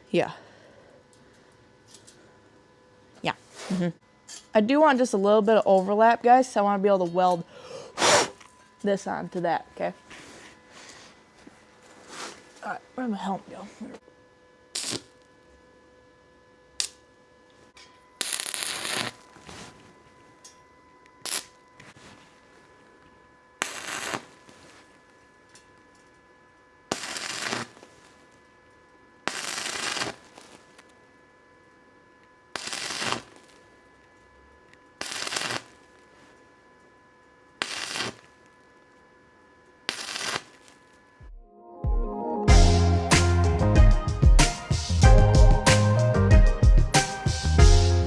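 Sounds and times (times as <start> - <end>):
faint electrical hum: 0.0 - 41.8
welding arc crackling: 14.7 - 15.6, 16.7 - 17.2, 18.2 - 19.8, 21.2 - 21.7, 23.6 - 26.1, 26.9 - 28.5, 29.2 - 31.0, 32.4 - 36.4, 37.4 - 39.0, 39.8 - 41.0, 42.6 - 48.0.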